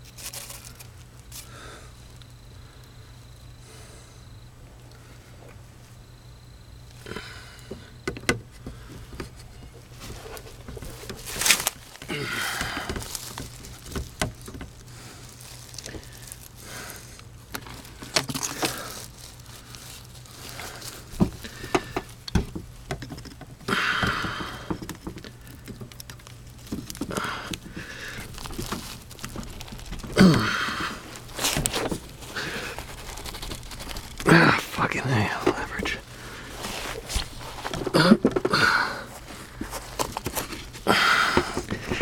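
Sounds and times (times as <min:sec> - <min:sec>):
low steady hum: 0:00.0 - 0:42.0
knocks clicks and rustling: 0:07.7 - 0:16.6, 0:17.5 - 0:34.5
scraping: 0:24.4 - 0:42.0.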